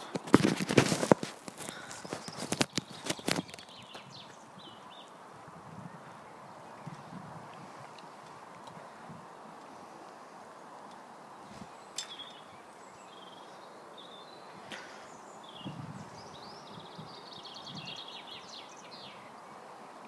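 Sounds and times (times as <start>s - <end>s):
small birds chirping: 0.0s - 20.0s.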